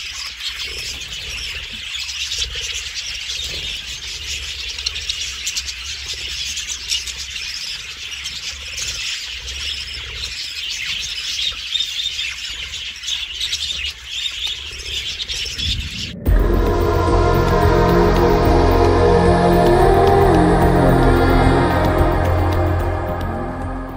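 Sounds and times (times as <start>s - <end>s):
music: 16.3s - 23.9s.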